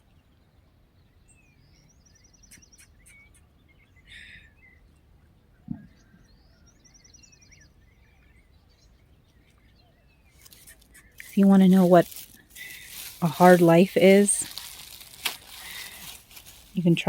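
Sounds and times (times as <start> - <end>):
birds chirping: 1.2 - 17.0
soft rustle: 10.3 - 17.0.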